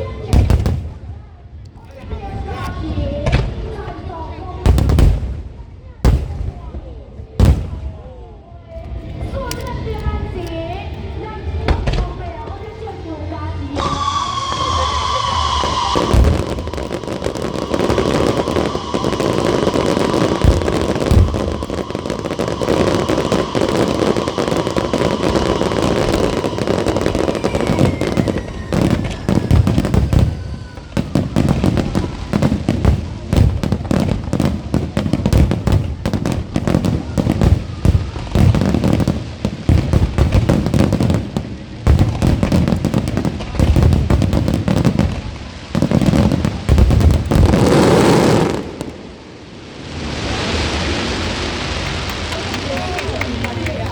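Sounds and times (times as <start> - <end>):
fireworks bangs and crackling: 0.0 - 10.7, 11.5 - 53.9
fireworks whistles falling in pitch: 13.8 - 49.2.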